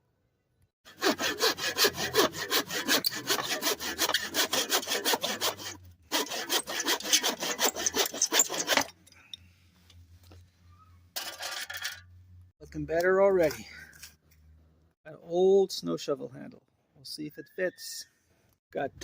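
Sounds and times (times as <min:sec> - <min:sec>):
hand saw cutting wood: 0:00.9 - 0:09.0.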